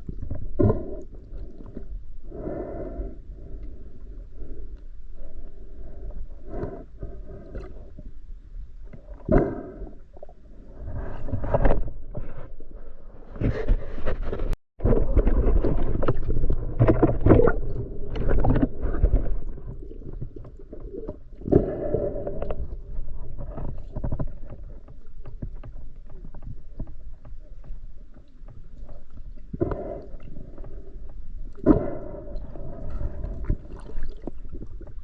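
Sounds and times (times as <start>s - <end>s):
water splashing and gurgling: 14.8s - 35.0s.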